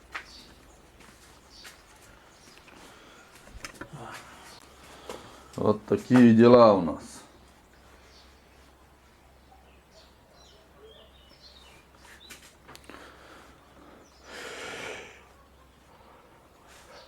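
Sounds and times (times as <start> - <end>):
faint bird chirps: 7.7 - 13.0.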